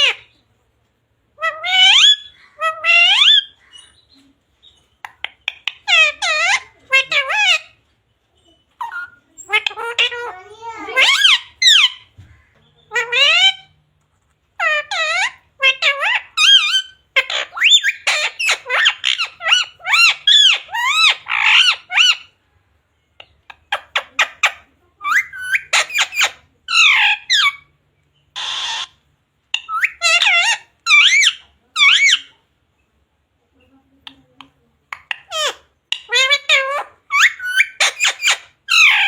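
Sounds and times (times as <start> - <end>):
parrot chattering and whistling: 0.0 - 0.4, 1.4 - 7.8, 8.5 - 12.1, 12.8 - 13.8, 14.6 - 22.4, 23.2 - 32.4, 34.0 - 39.0
parrot squawk: 0.0 - 0.4, 1.4 - 4.0, 5.2 - 7.8, 8.8 - 13.8, 14.6 - 22.4, 23.6 - 27.7, 28.3 - 32.4, 34.9 - 39.0.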